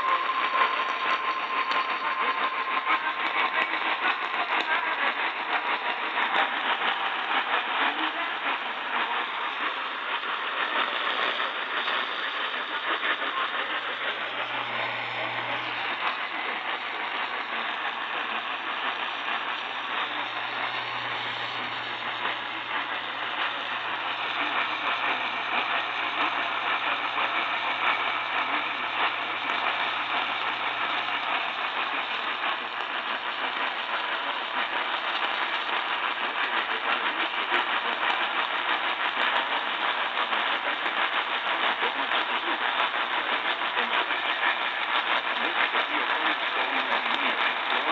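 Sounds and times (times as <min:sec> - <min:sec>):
radio static hiss: 0:00.0 - 0:47.9
weak distant radio station: 0:09.2 - 0:33.0
low hum: 0:13.3 - 0:32.8.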